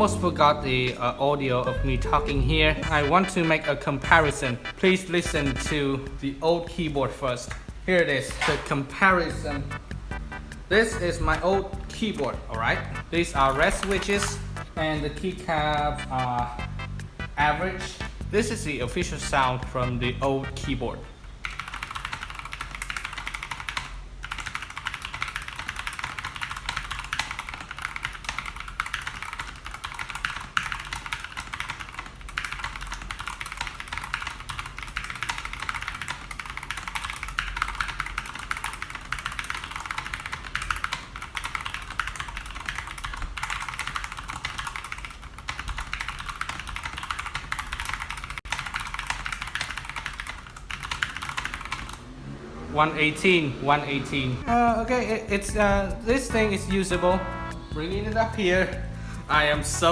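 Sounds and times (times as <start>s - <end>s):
mechanical keyboard typing: 10.8s - 14.6s, 21.4s - 52.0s.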